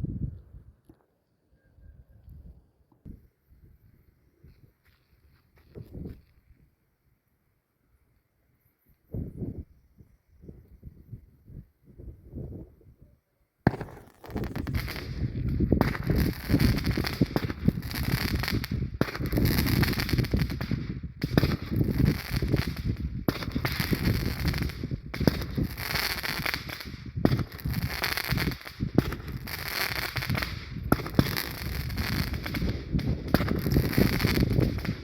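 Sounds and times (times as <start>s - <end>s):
firework cake crackling bursts: 13.7s - 35.0s.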